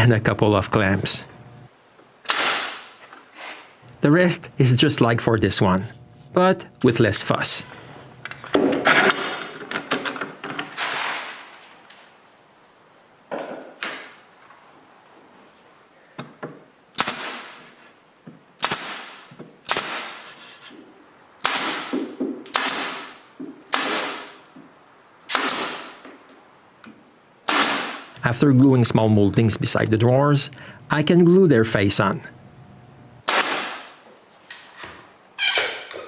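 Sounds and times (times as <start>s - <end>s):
pin nailer firing: 2.2s - 3.0s, 8.6s - 11.5s, 17.0s - 17.8s, 18.6s - 20.4s, 21.4s - 24.4s, 25.3s - 26.0s, 27.5s - 28.2s, 33.2s - 34.0s.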